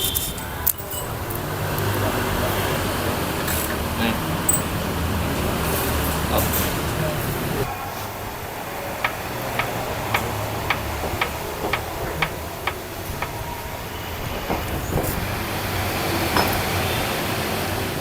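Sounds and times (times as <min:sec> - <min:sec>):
engine knocks: 0:08.6 - 0:18.0
sharp regular engine tick: 0:09.0 - 0:13.4.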